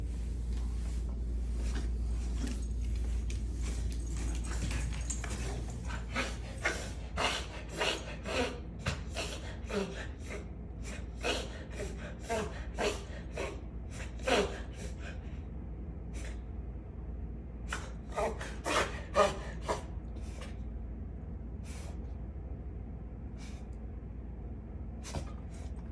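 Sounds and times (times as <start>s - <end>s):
pet coughing: 5.8s - 15.0s, 17.8s - 19.9s.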